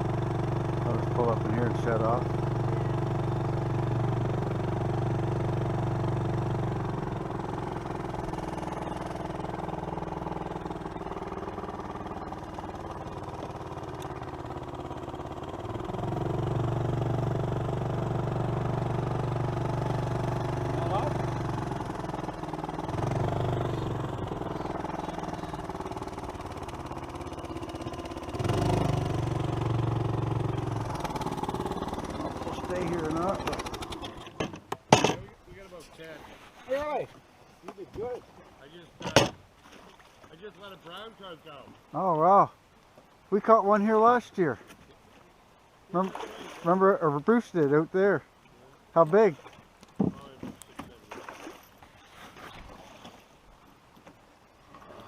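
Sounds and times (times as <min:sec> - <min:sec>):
vehicle engine idling: 0:00.0 - 0:34.4.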